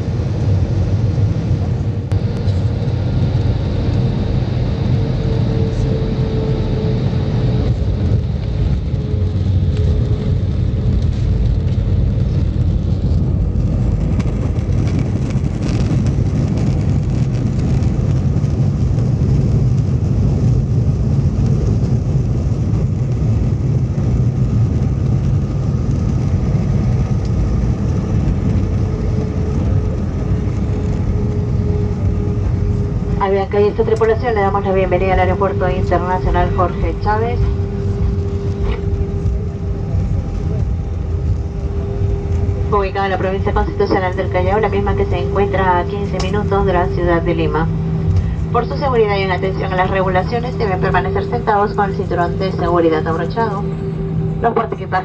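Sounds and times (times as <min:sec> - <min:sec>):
jet engines low rumble: 0:00.0 - 0:55.0.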